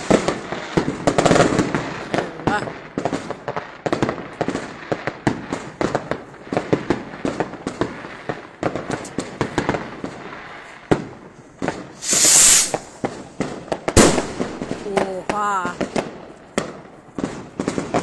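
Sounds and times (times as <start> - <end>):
fireworks and firecrackers popping: 0.0 - 18.0
loud hiss: 12.0 - 13.0.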